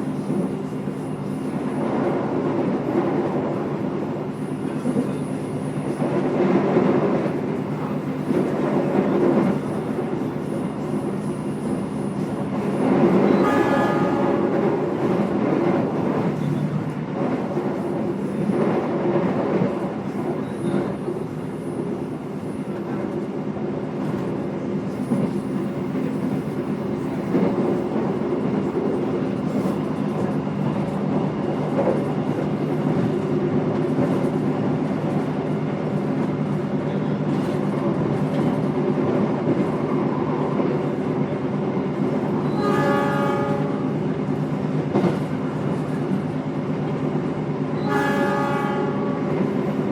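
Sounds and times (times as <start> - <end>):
train wheels rumbling on rails: 0.0 - 49.9
train horn: 13.2 - 15.0, 42.5 - 44.0, 47.8 - 49.5.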